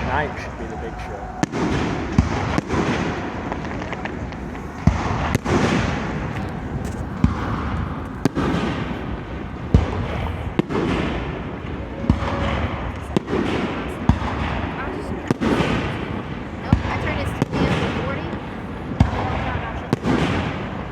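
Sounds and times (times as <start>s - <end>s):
firework booms: 0.0s - 20.9s
rumble of firework bursts: 0.0s - 20.9s.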